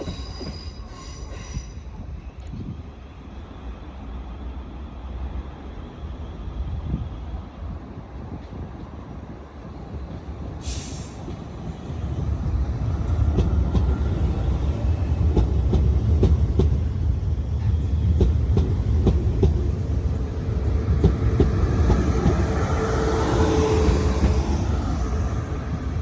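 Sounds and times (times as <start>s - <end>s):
train rumbling: 0.0s - 26.0s.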